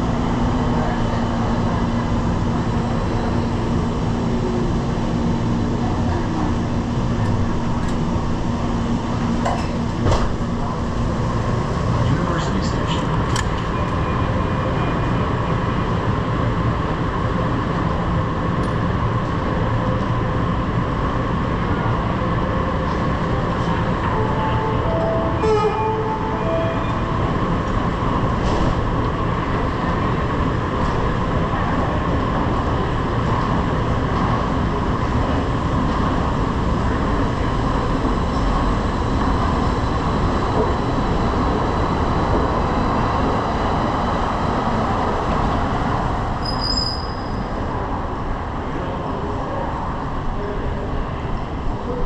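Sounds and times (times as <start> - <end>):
train wheels rumbling on track: 0.0 - 52.0
high wheel squeal: 46.4 - 47.6.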